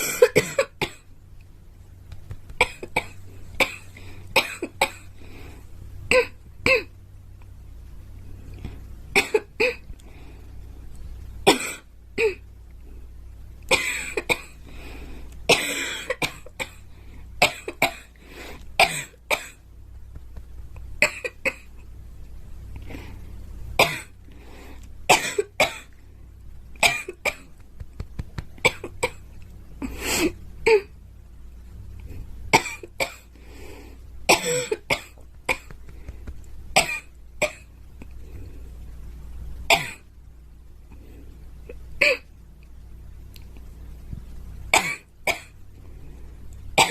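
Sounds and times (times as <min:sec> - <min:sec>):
girl coughing: 0:00.0 - 0:01.0, 0:11.5 - 0:12.4, 0:25.1 - 0:25.9, 0:34.3 - 0:35.7.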